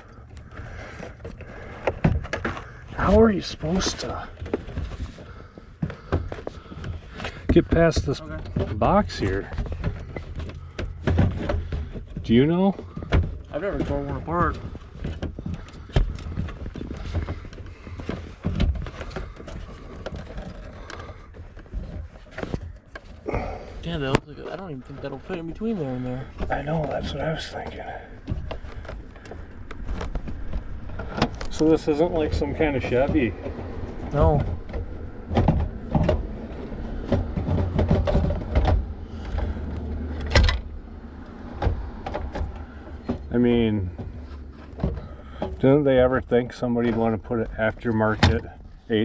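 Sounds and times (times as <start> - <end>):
hands knocking and rattling dashboard: 0.0 - 23.4, 24.0 - 49.0
car radio being pried loose: 32.4 - 43.2.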